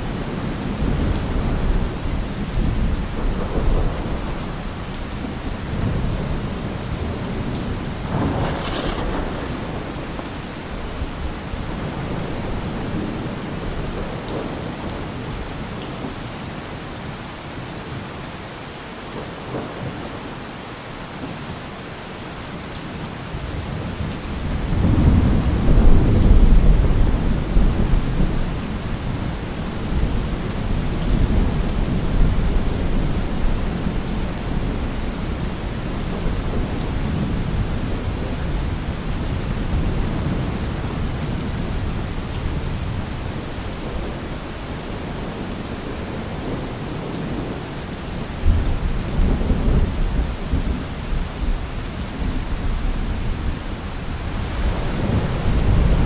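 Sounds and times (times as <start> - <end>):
steady rain: 0.0 - 56.0
rolling thunder: 5.8 - 14.5.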